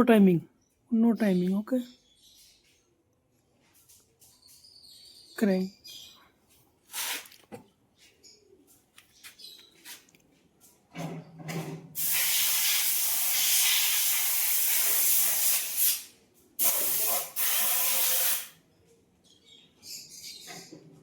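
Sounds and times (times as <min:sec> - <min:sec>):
loud hissing spray: 0:12.0 - 0:18.6.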